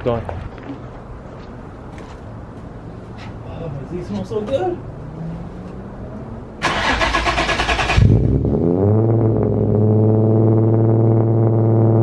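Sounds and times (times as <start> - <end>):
car engine revving and idling: 4.9 - 12.0.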